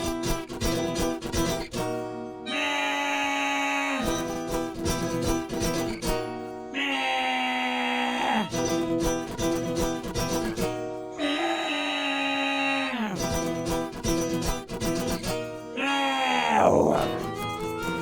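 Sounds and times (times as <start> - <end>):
acoustic guitar strumming: 0.0 - 18.0.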